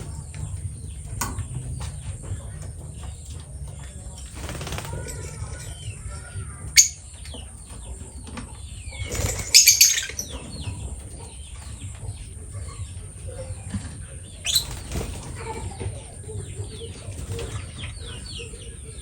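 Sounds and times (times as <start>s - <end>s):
bird chirping: 0.0s - 19.0s
bird wings flapping: 3.3s - 5.7s, 9.0s - 10.1s, 14.5s - 15.6s.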